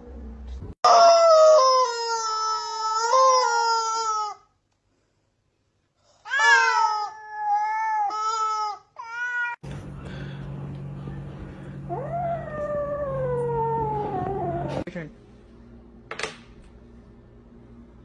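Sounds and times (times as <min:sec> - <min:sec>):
cat yowling: 0:06.3 - 0:09.6.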